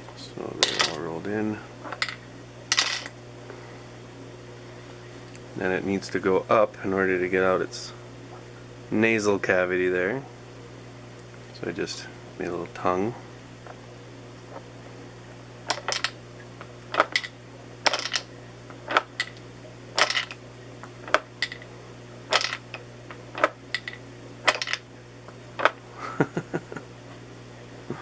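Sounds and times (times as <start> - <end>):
marbles clicking and clattering: 20.0 - 20.4, 22.3 - 22.7, 23.4 - 24.8.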